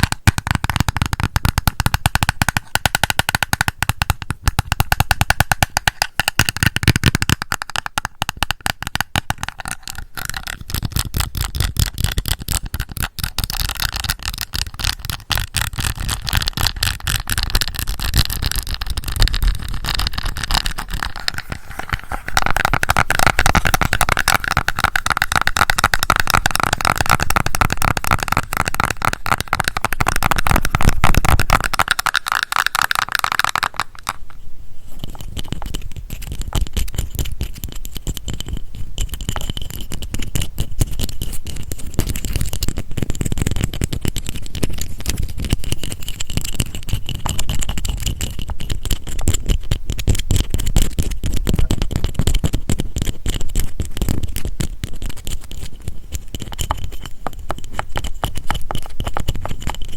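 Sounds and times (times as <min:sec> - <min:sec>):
fingernails tapping on plastic: 0:00.0 - 0:34.3.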